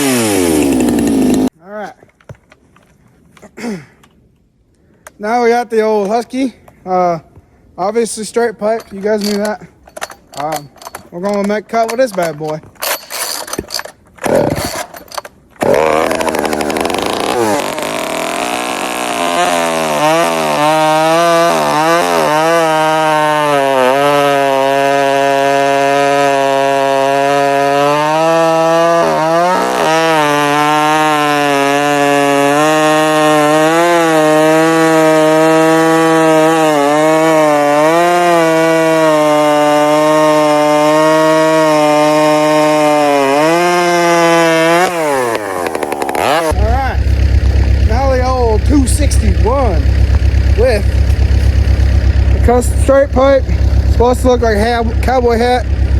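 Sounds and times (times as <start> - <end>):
chainsaw engine revving: 0.0 - 1.5, 12.8 - 55.9
starter cord pulls: 8.7 - 18.3.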